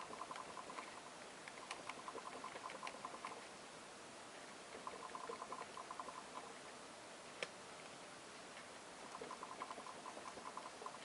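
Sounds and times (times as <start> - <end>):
desk lamp rattling ticks: 0.0 - 3.5, 4.8 - 6.5, 9.1 - 11.0.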